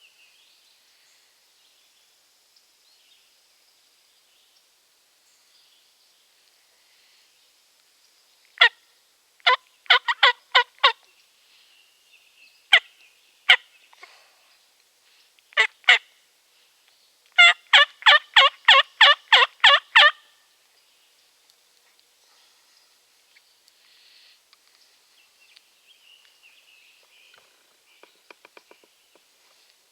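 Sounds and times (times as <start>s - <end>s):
turkey yelping: 9.4s - 10.9s, 15.6s - 16.0s, 17.4s - 20.2s.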